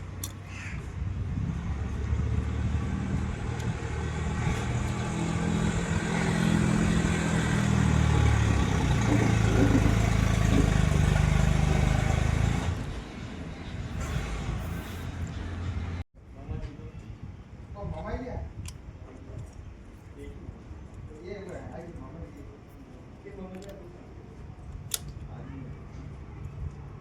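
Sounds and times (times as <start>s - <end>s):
vehicle engine running: 2.7s - 13.0s.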